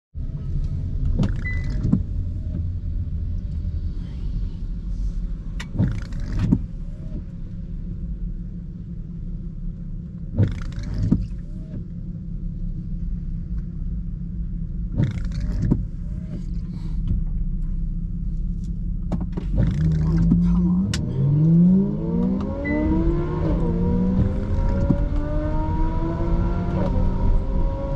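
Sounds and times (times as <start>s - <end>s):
car road and engine rumble: 0.2s - 27.9s
windscreen wiper strokes: 0.8s - 2.9s, 3.6s - 7.5s, 10.3s - 11.9s, 14.8s - 27.9s.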